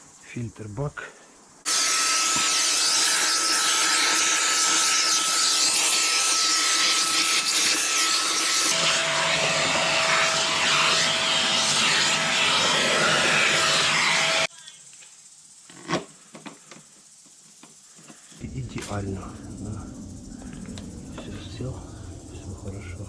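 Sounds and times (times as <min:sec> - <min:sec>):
vacuum cleaner running: 0:01.7 - 0:14.5.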